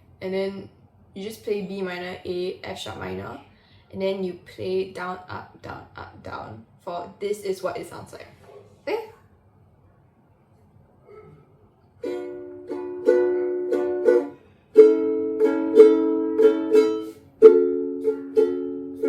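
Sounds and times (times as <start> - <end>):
ukulele strumming chords: 12.0 - 19.0.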